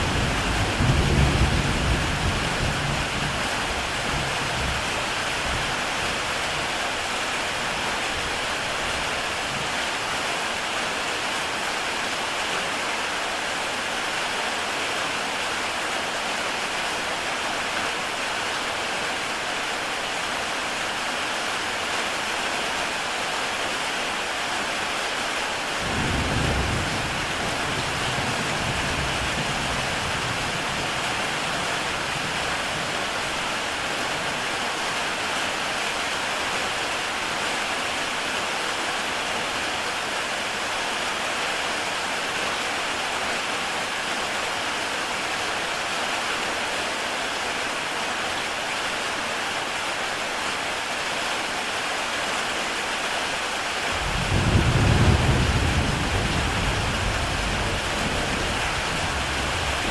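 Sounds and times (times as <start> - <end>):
low rumble of thunder: 0.0 - 5.0, 25.8 - 32.8, 54.0 - 59.9
heavy rain on tile roof: 0.0 - 59.9.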